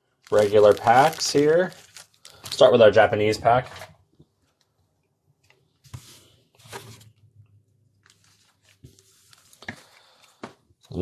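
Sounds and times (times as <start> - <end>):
foil wrapper crinkling: 0.2 - 2.8.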